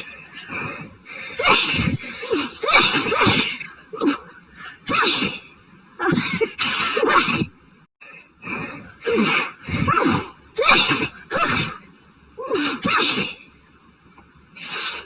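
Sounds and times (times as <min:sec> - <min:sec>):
person sneezing: 0:01.4 - 0:04.3, 0:04.9 - 0:05.4, 0:06.0 - 0:07.5, 0:09.0 - 0:11.8, 0:12.4 - 0:13.4, 0:14.6 - 0:15.0.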